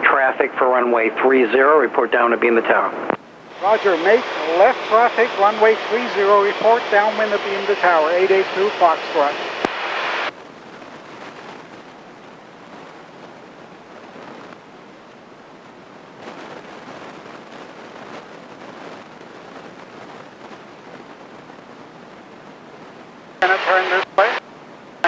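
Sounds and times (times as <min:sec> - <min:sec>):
light airplane cockpit noise: 0:00.0 - 0:13.4, 0:23.4 - 0:25.0.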